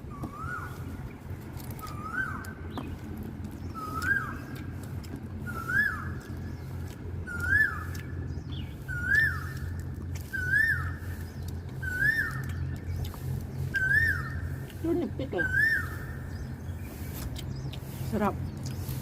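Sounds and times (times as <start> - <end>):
steady low hum: 0.0 - 19.0
bird whistling call: 0.1 - 0.9, 1.8 - 2.9, 3.7 - 4.6, 5.4 - 18.0.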